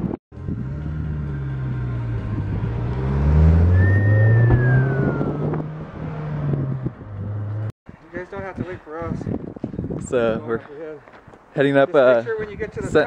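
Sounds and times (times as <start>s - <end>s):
car engine accelerating: 0.3s - 7.7s
high tone sliding down: 0.4s - 7.7s.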